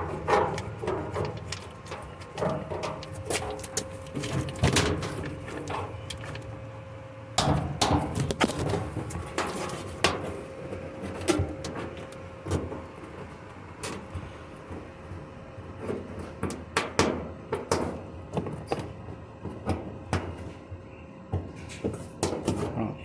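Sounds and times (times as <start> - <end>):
clicks and knocks of hands working: 0.0 - 6.5.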